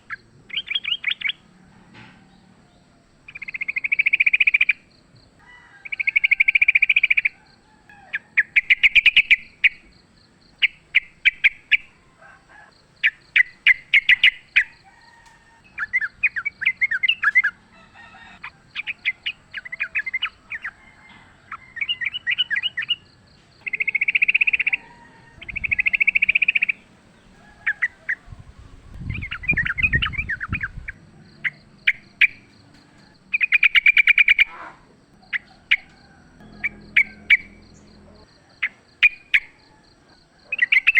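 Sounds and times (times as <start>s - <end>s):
bulbuls chattering: 15.8s - 40.9s
brief low rumble: 36.4s - 38.4s.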